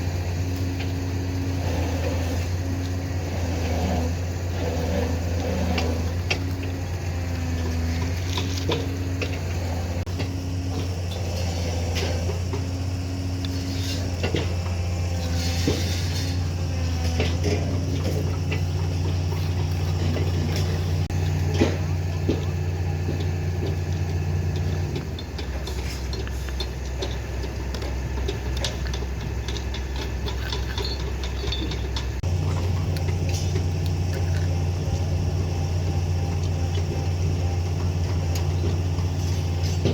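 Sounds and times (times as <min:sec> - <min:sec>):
excavator diesel engine running: 0:00.0 - 0:39.9
metallic clanks and knocks: 0:13.4 - 0:35.0.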